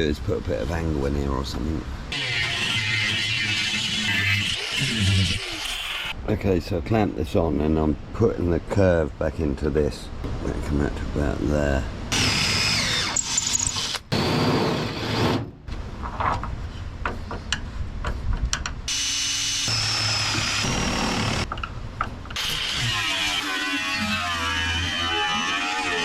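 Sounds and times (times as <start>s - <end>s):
power tools working: 12.1s - 15.4s, 18.9s - 21.5s, 22.4s - 26.0s.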